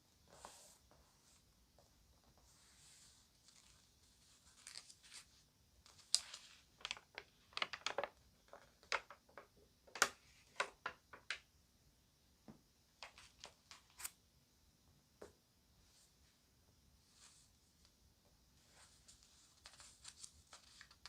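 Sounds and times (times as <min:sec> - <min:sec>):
magazine pages crinkling: 0:03.4 - 0:05.3, 0:05.9 - 0:09.4, 0:19.0 - 0:21.0.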